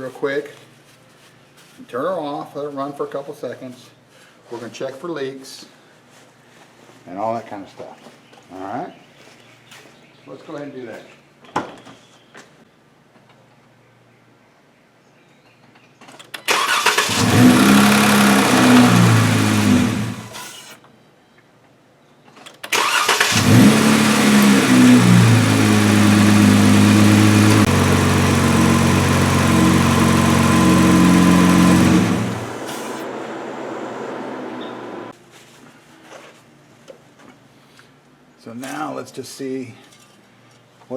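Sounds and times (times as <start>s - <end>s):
car engine cranking: 16.4s - 20.5s, 22.6s - 33.2s
car engine idling: 17.1s - 20.4s, 22.8s - 35.1s.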